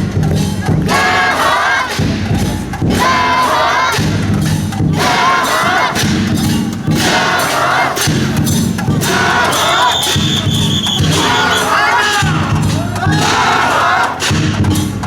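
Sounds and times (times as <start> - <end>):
drum beats: 0.0 - 15.0
group shouting rhythmic chant: 0.0 - 15.0.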